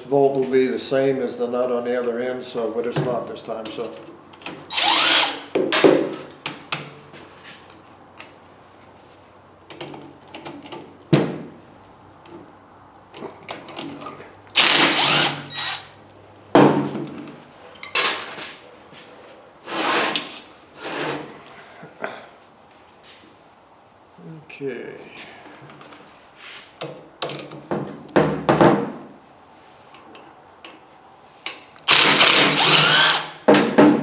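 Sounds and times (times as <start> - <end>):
power tool loosening bolts: 4.4 - 6.6, 13.6 - 15.9, 31.8 - 33.7.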